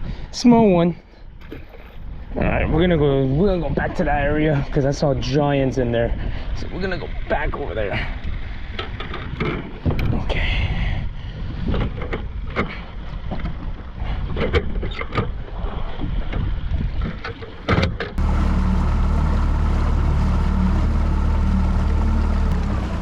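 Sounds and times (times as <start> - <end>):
gear clattering on a boat: 6.9 - 10.4, 11.6 - 18.2
boat motor running: 18.0 - 23.0.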